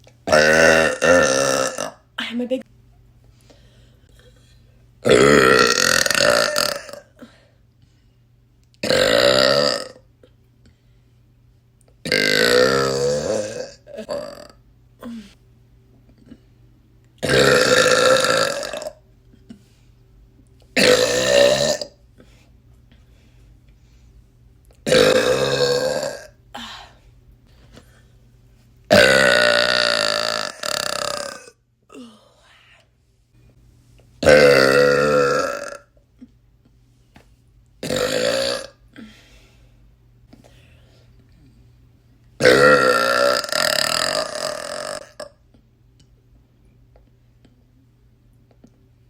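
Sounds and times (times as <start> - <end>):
woman burping loudly: 0.3 - 2.1, 5.0 - 7.3, 8.8 - 10.0, 12.0 - 15.3, 17.2 - 19.0, 20.8 - 22.0, 24.8 - 26.7, 28.9 - 32.1, 34.2 - 35.9, 37.8 - 38.8, 42.4 - 45.4.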